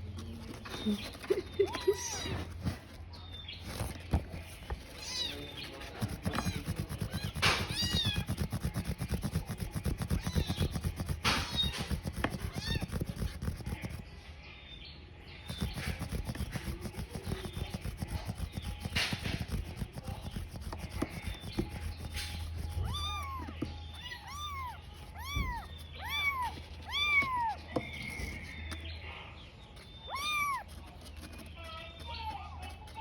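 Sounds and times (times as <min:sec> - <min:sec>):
kitten meowing: 0:01.6 - 0:02.6, 0:06.1 - 0:08.4, 0:10.0 - 0:13.4, 0:22.6 - 0:27.6, 0:30.1 - 0:30.7.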